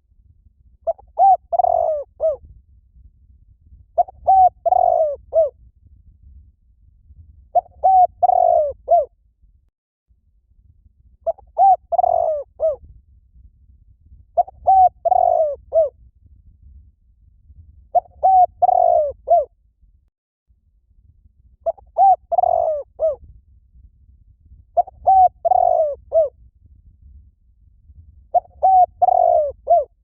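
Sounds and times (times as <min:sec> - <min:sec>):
dove cooing: 0:00.9 - 0:02.4, 0:04.0 - 0:05.5, 0:07.6 - 0:09.1, 0:11.3 - 0:12.8, 0:14.4 - 0:15.9, 0:18.0 - 0:19.5, 0:21.7 - 0:23.2, 0:24.8 - 0:26.3, 0:28.4 - 0:30.0.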